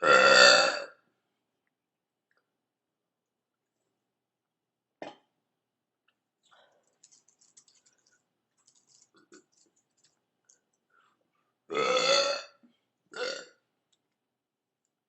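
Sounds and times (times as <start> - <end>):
faint irregular clicks and taps: 6.0 - 11.4.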